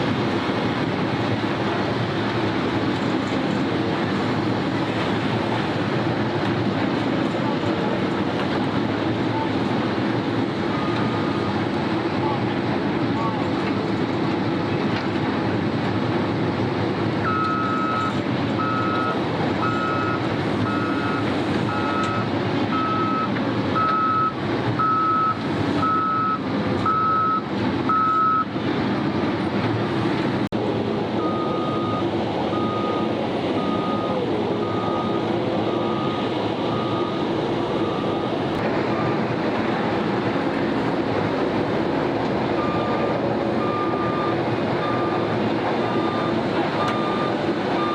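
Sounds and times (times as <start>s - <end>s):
diesel engines of heavy machines: 0.0s - 47.9s
reversing alarm beeping: 17.2s - 28.5s, 31.2s - 39.2s, 42.6s - 47.9s.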